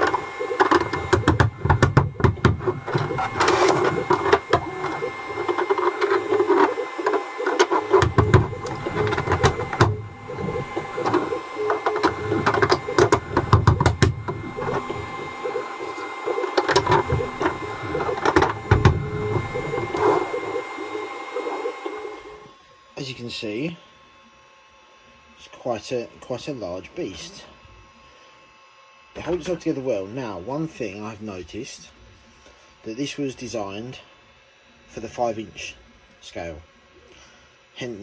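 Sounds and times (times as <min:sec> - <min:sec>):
hard plastic parts clicking: 0:00.0 - 0:20.6
stepper motors whirring: 0:00.0 - 0:22.5.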